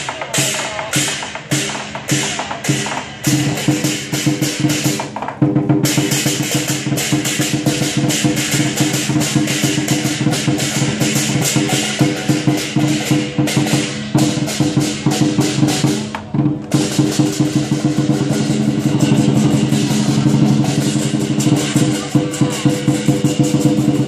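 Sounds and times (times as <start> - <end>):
drum beat: 0.0 - 24.0
crash cymbals: 5.8 - 16.1, 16.8 - 24.0.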